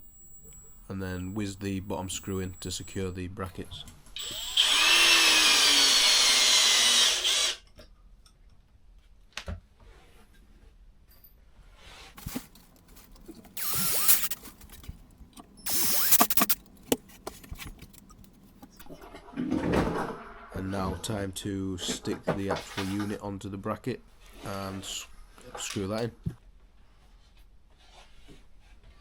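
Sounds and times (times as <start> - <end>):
power drill driving screws: 4.2 - 7.6, 12.2 - 18.8
light knocks and handling: 14.3 - 18.8.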